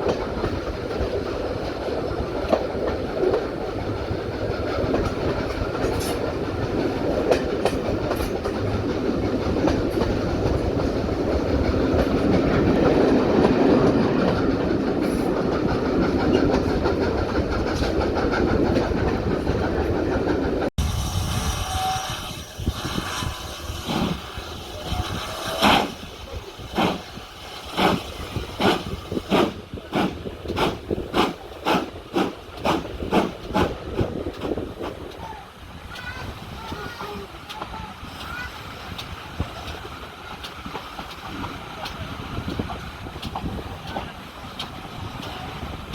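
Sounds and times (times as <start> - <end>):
wheels clacking over rail joints: 0.0 - 20.7, 21.5 - 45.9
train wheels rumbling on rail: 0.0 - 45.9.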